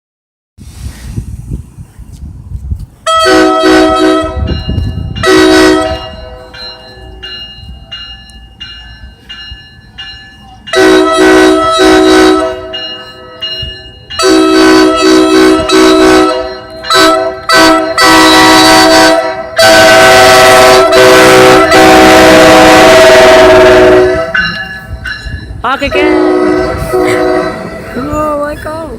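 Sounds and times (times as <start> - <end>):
train horn chord blasts: 3.1 - 4.6, 5.2 - 6.5, 10.7 - 12.8, 14.2 - 24.4, 25.9 - 28.0.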